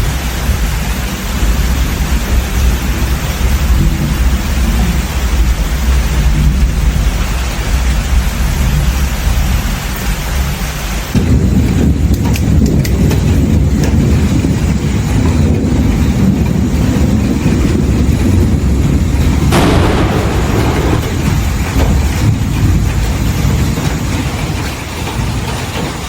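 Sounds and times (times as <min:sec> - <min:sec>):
heavy rain: 0:00.0 - 0:15.3, 0:18.6 - 0:26.0
thunder crackles: 0:18.6 - 0:24.3
rumbling thunder: 0:18.7 - 0:24.3.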